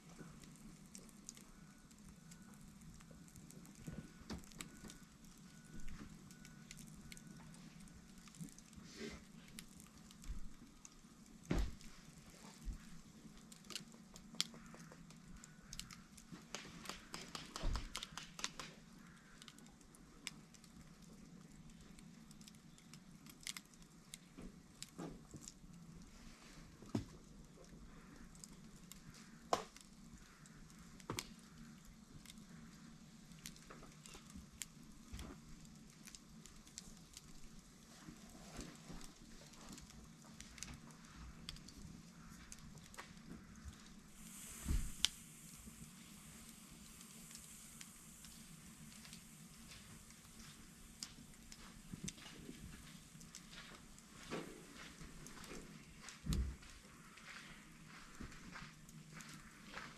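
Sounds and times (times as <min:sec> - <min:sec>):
faint low hum: 0:00.0 - 0:59.9
wood fire crackling: 0:00.0 - 0:59.9
sharp pops: 0:16.5 - 0:18.8.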